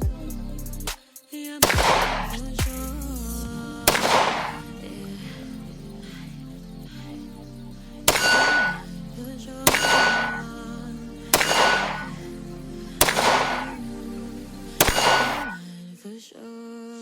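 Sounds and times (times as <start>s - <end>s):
pistol shots: 1.6s - 2.4s, 3.9s - 4.8s, 8.1s - 8.8s, 9.7s - 10.5s, 11.4s - 12.2s, 13.0s - 13.8s, 14.8s - 15.6s.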